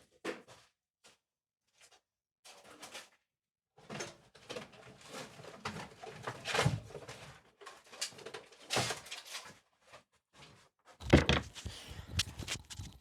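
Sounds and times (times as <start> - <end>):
objects clattering and knocking: 11.0 - 13.0.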